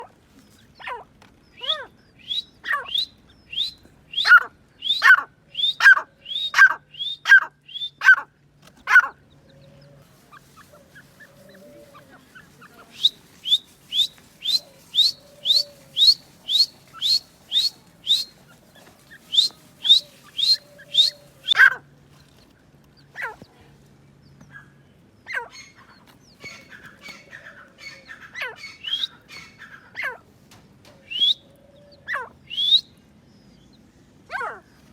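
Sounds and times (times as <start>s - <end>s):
francolin calling: 10.4s - 21.7s.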